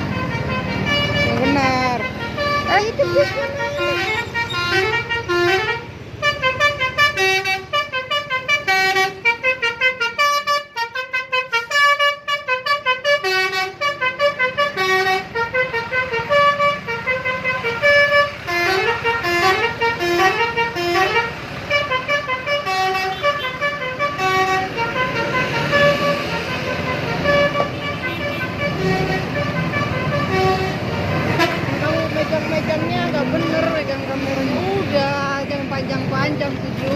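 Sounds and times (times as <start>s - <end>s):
multi-tone musical bus horn: 0.0s - 34.6s.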